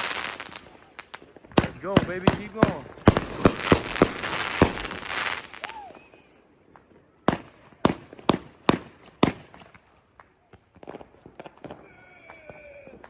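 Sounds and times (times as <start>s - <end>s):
sharp firework reports: 0.0s - 5.8s.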